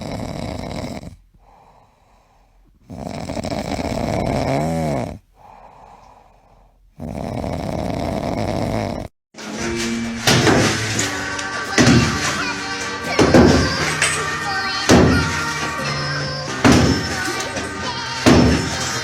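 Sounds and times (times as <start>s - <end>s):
dog breathing: 0.0s - 9.1s
dog snoring: 0.0s - 9.1s
steady tones: 9.4s - 19.0s.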